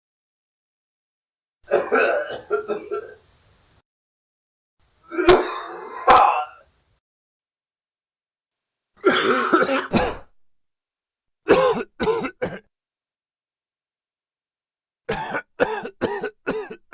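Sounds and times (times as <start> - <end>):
man coughing: 9.0 - 10.3, 11.5 - 12.6, 15.1 - 16.9.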